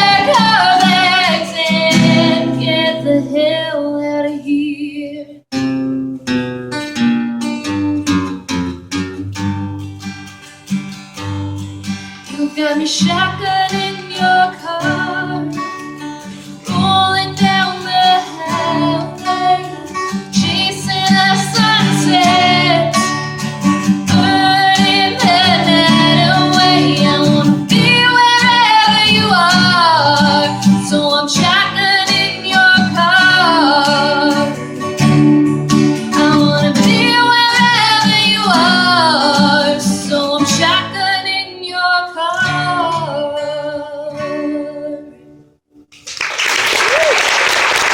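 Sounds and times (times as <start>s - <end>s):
strummed acoustic guitar: 0.0s - 3.6s, 5.5s - 41.4s
woman singing: 0.0s - 5.4s, 12.3s - 15.7s, 16.6s - 23.2s, 24.1s - 34.7s, 36.1s - 45.2s.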